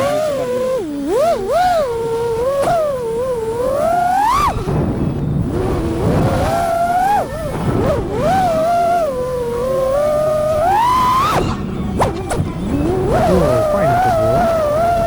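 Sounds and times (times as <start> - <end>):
quadcopter motors whining: 0.0 - 15.0.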